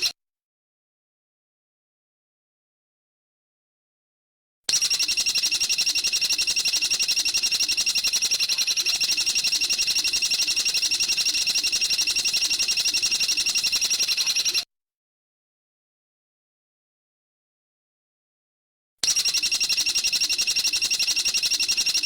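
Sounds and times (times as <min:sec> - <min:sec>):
songbird rapid trill: 0:04.8 - 0:14.6.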